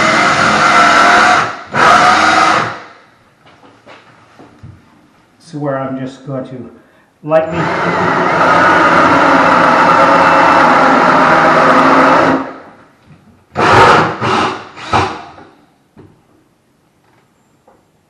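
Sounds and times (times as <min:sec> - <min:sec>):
power drill cutting wood: 0:00.0 - 0:02.8, 0:07.5 - 0:12.5, 0:13.6 - 0:15.4.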